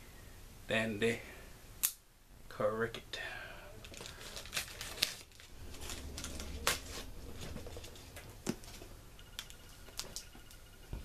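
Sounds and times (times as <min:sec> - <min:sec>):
sharp snap: 0:01.8 - 0:02.0
cardboard tearing: 0:04.0 - 0:07.9.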